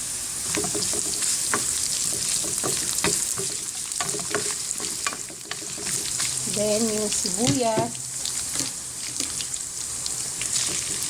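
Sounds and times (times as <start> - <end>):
ginger and garlic sizzling in oil: 0.0 - 11.0
utensil scraping a pan: 0.5 - 6.4.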